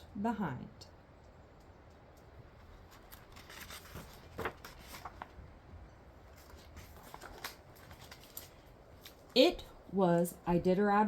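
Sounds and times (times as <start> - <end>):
paper rustling: 2.5 - 5.6, 6.2 - 9.4.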